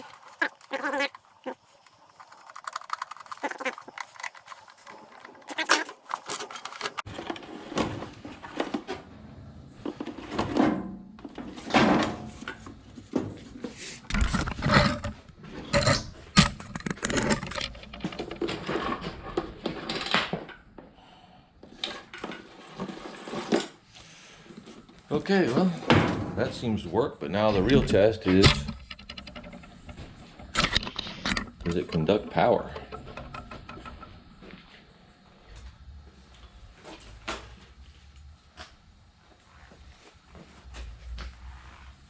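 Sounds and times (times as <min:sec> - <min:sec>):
power cord reel clicking and rattling: 0:02.3 - 0:07.3.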